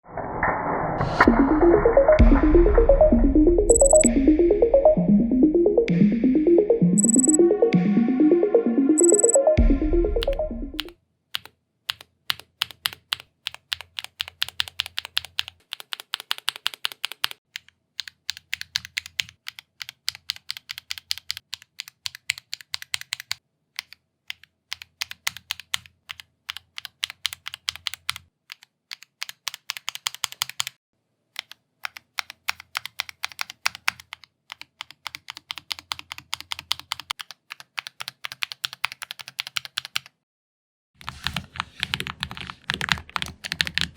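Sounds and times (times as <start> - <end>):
fast typing on mechanical keyboard: 7.0 - 7.4, 10.2 - 17.4, 18.0 - 30.8, 31.4 - 40.2, 41.0 - 43.9.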